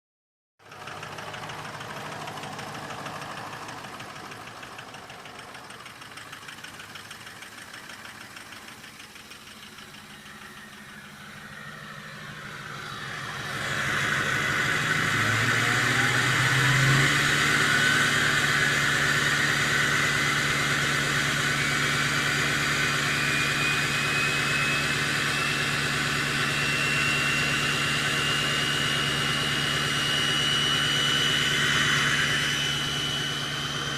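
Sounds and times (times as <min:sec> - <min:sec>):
diesel engine idling: 0:00.6 - 0:33.9
turbo whistle rising in pitch: 0:09.4 - 0:33.9.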